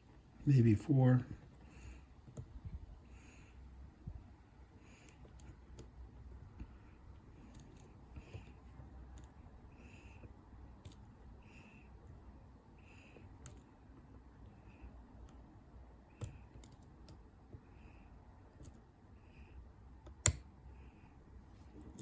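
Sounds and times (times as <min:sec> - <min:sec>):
lock pick clicking and scraping: 0:07.4 - 0:09.4, 0:10.8 - 0:11.1, 0:13.4 - 0:13.7, 0:16.2 - 0:17.2, 0:20.0 - 0:20.5.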